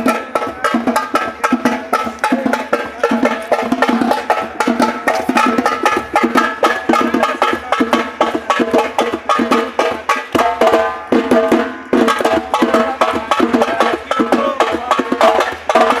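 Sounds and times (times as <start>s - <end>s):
drum beaten rapidly: 0.0s - 16.0s.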